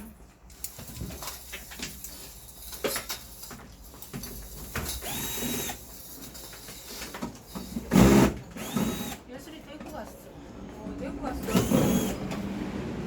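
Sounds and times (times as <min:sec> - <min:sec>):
power drill whirring: 0:04.9 - 0:09.2, 0:11.4 - 0:13.0.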